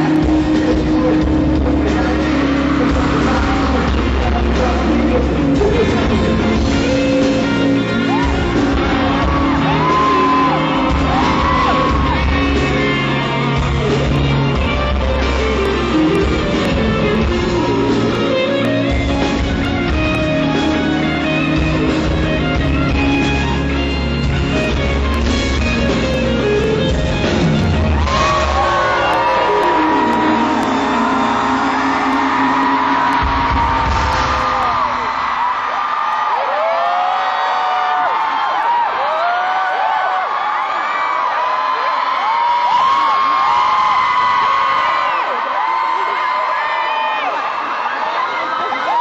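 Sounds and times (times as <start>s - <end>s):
person singing: 0.0s - 19.4s
electric guitar: 0.0s - 35.4s
live rock band: 0.0s - 35.7s.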